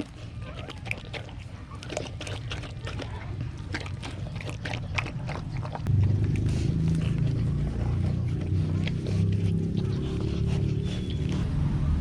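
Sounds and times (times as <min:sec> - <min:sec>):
dog licking and chewing: 0:00.0 - 0:11.5.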